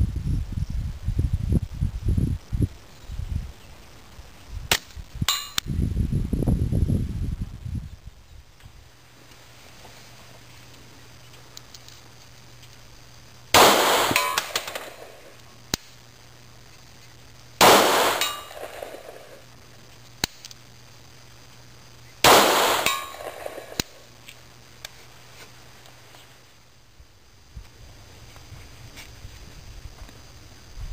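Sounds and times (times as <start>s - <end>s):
pistol shots: 13.6s - 15.2s, 17.6s - 19.4s, 22.2s - 24.0s.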